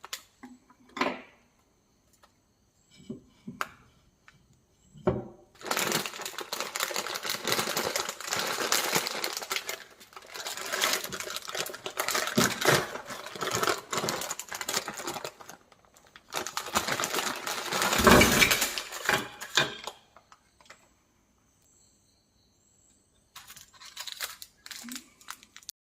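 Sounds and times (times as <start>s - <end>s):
plastic wrappers crinkling: 5.6s - 19.7s, 23.4s - 25.7s.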